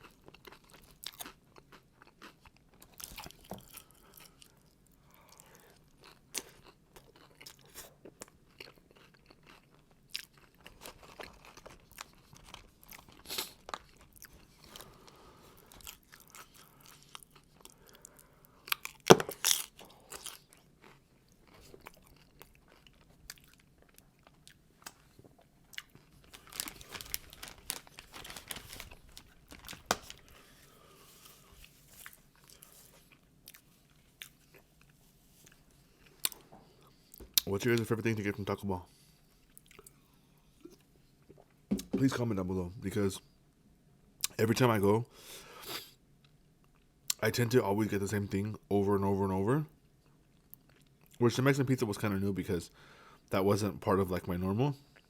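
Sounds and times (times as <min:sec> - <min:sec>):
person chewing crunchy food: 0:00.0 - 0:37.5, 0:50.1 - 0:51.2.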